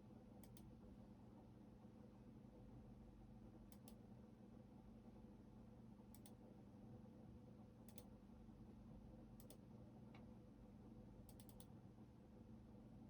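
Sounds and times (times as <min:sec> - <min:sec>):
computer keyboard keystrokes: 0:11.3 - 0:11.7.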